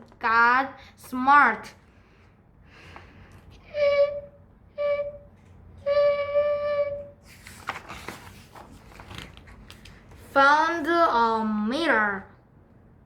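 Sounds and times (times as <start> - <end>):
flute-like held notes: 3.6 - 7.3
soft rustling: 7.3 - 10.4.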